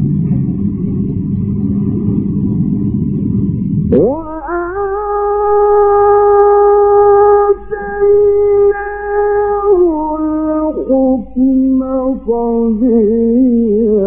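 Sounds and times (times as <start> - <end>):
low steady hum: 0.0 - 14.0
man chanting: 3.9 - 14.0.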